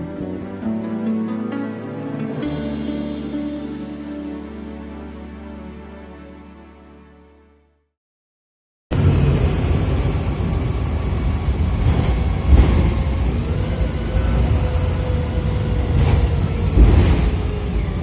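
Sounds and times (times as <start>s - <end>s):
bus engine drone: 8.9s - 18.0s.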